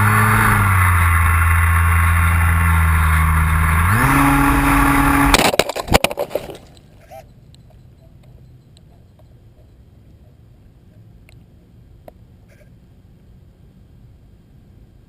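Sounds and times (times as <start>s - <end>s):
model plane engine running: 0.0s - 5.4s.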